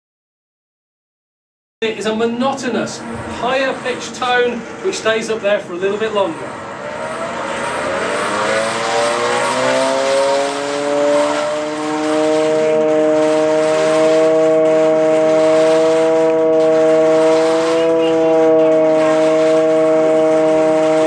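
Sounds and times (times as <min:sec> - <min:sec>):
air raid siren winding up: 0:06.4 - 0:21.0.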